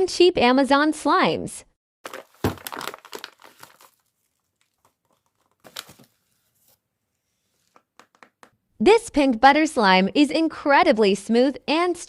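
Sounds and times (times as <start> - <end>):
plastic packaging crinkling and tearing: 2.0 - 6.8.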